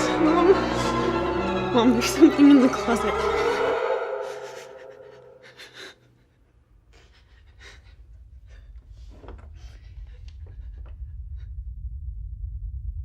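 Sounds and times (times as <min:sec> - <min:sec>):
person panting: 0:04.1 - 0:10.8
low rumble: 0:06.8 - 0:13.0.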